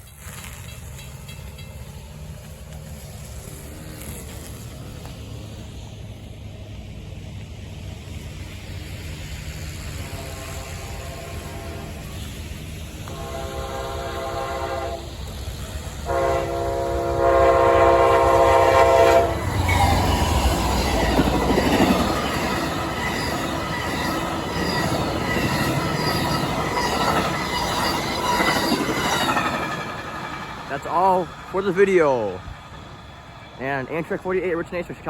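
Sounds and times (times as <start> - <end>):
wheels clattering over rail joints: 0.0 - 6.0, 19.2 - 34.3
train rumbling past: 0.0 - 35.0
train horn blasts: 10.0 - 12.2, 13.0 - 15.2, 16.0 - 19.5.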